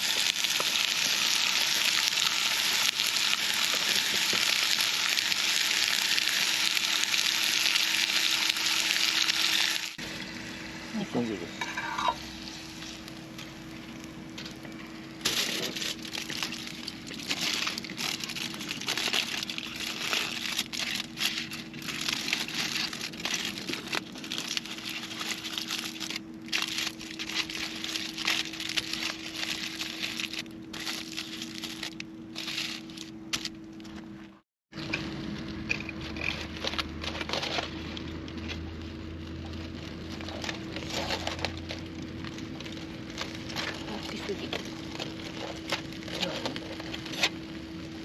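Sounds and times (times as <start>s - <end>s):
meat sizzling on a grill: 0.0s - 14.1s.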